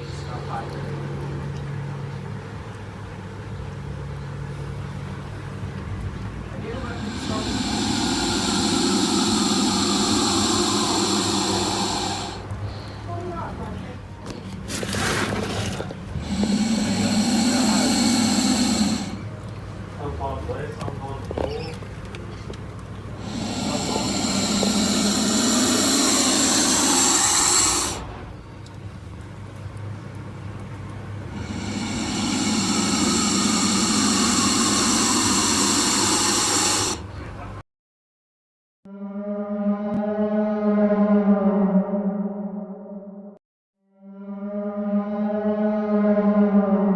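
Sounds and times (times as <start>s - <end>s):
hoarse creature roar: 6.8s - 12.5s, 15.2s - 19.3s, 23.2s - 28.1s, 31.3s - 37.1s.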